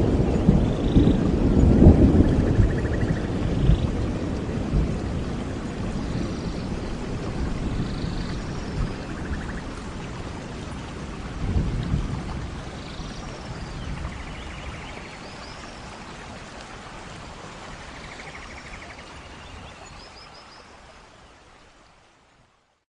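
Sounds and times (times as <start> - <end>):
thunder rumbling: 0.0 - 17.3
rain hissing: 0.0 - 22.6.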